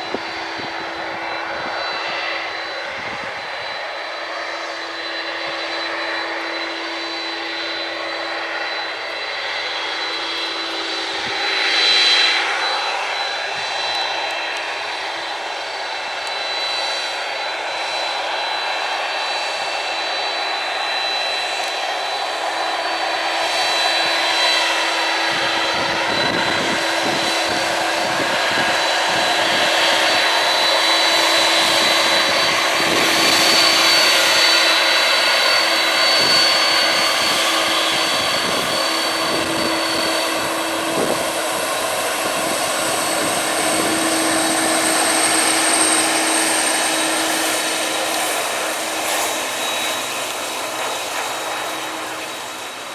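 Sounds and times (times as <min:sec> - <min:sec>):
wind buffeting microphone: 0:00.0 - 0:03.8, 0:24.9 - 0:52.3
jet airliner engines roaring: 0:00.0 - 0:52.9.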